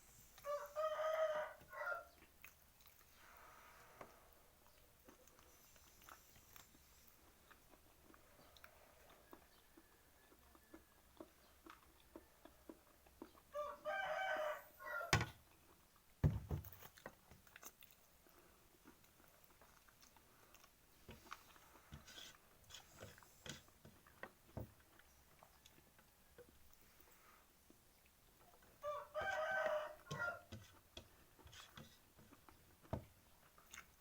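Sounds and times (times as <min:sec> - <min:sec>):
rooster crowing: 0:00.4 - 0:02.1, 0:13.6 - 0:15.3, 0:28.8 - 0:30.5.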